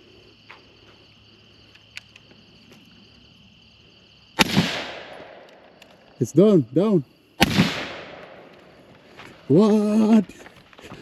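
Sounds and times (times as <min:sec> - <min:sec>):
insects chirring: 0:00.0 - 0:11.0
gunshot: 0:04.4 - 0:05.5, 0:07.4 - 0:08.5.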